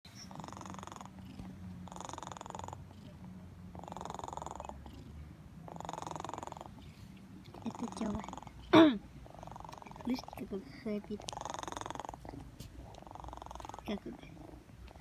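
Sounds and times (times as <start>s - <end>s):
snoring with rapid flutter: 0.1s - 6.8s, 7.5s - 15.0s.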